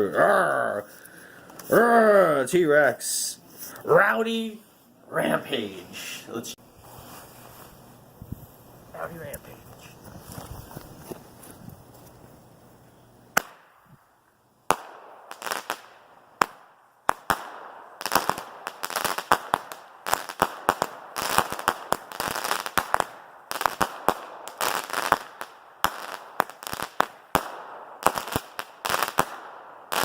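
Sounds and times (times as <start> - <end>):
firework crackling: 5.3 - 13.8, 14.7 - 30.0
firework shots and bursts: 13.4 - 13.9, 14.7 - 30.0.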